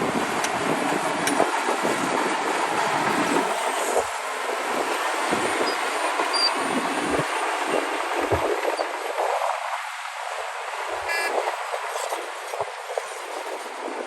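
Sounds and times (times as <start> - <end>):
heavy machinery running: 0.0 - 9.6.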